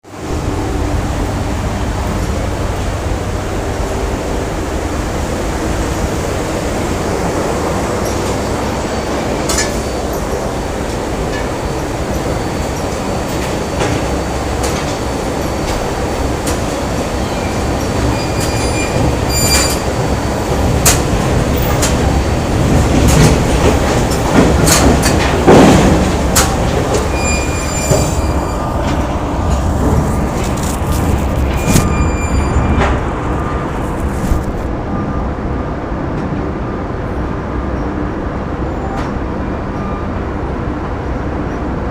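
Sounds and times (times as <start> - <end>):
heavy machinery rumble: 0.0 - 41.9
short high squeals: 18.1 - 19.9, 27.1 - 28.6, 31.5 - 32.8.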